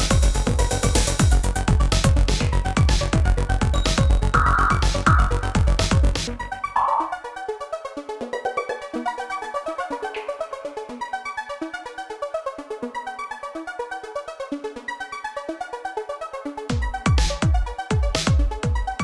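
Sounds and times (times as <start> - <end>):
electronic synthesizer music: 0.0 - 11.5
fast ticking beat: 3.7 - 6.1.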